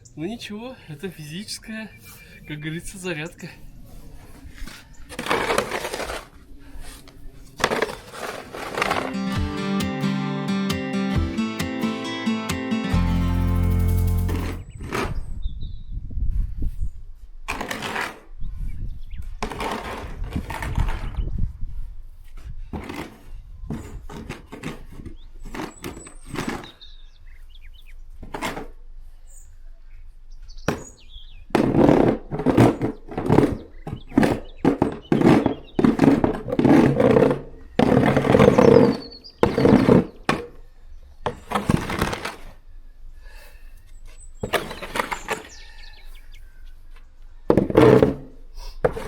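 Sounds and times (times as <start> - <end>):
snow shovel scraping snow: 5.1 - 7.1, 7.7 - 9.3.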